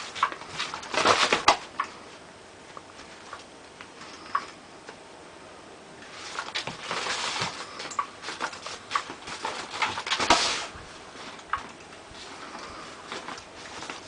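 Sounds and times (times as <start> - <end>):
kitten scuffling and rustling: 6.0 - 14.0.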